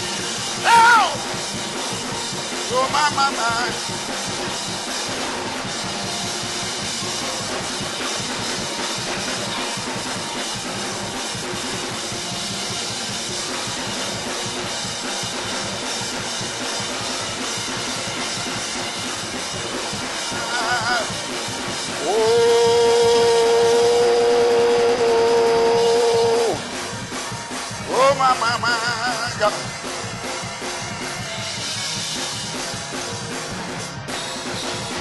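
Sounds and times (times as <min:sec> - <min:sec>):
drum kit fast beat: 0:00.0 - 0:35.0
live praise music: 0:00.0 - 0:35.0
voice crying out: 0:00.6 - 0:01.2, 0:20.4 - 0:21.1, 0:22.0 - 0:26.6.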